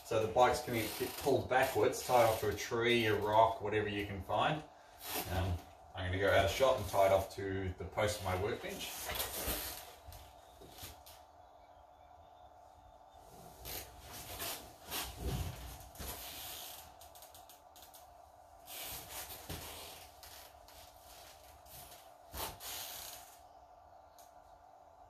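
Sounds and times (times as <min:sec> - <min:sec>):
faint steady hum: 0:00.0 - 0:25.0
rope rubbing and rustling: 0:00.1 - 0:04.1, 0:05.0 - 0:07.3, 0:07.9 - 0:11.3, 0:13.2 - 0:23.5.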